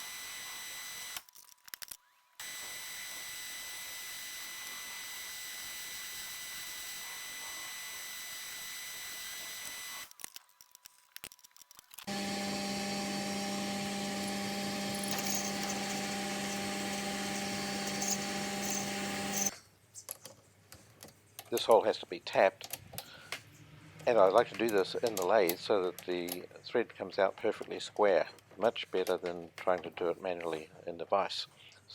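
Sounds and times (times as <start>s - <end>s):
metal lathe running: 12.1s - 19.5s.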